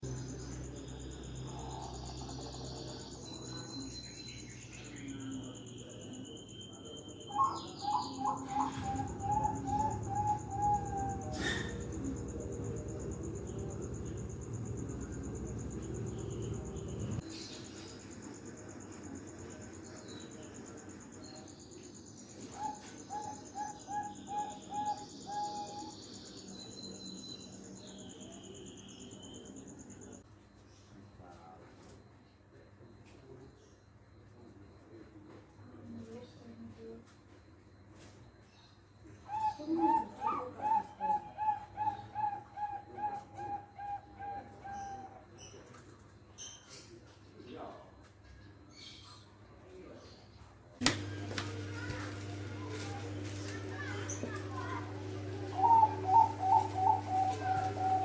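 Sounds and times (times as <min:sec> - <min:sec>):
insects trilling: 0:00.0 - 0:37.0, 0:37.7 - 0:46.7, 0:50.9 - 0:58.0
dove cooing: 0:00.7 - 0:03.9, 0:05.0 - 0:17.2, 0:22.4 - 0:26.0, 0:39.2 - 0:45.4, 0:51.0 - 0:58.0.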